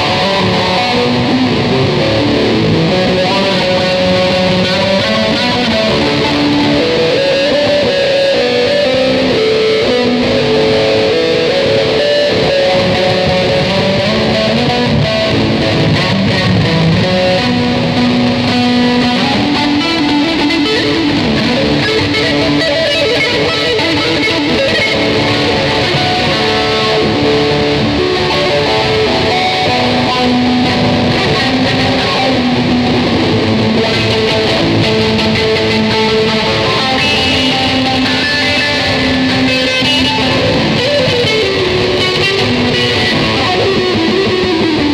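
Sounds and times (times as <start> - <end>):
electric guitar melody: 0.0 - 44.9.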